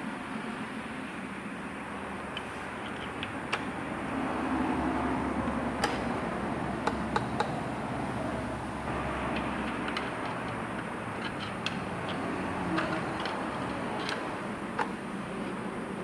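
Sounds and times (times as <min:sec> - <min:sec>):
steady background hum: 0:00.0 - 0:16.0
metallic tool clicks and taps: 0:06.8 - 0:07.6, 0:09.3 - 0:15.0.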